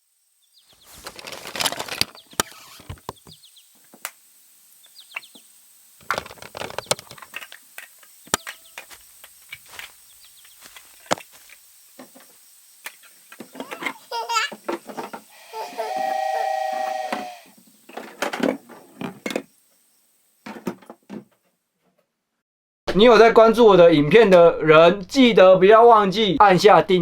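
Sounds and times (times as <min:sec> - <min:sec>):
faint birdsong chirps: 0:00.0 - 0:03.8, 0:04.7 - 0:05.7, 0:08.1 - 0:09.2, 0:10.0 - 0:10.8.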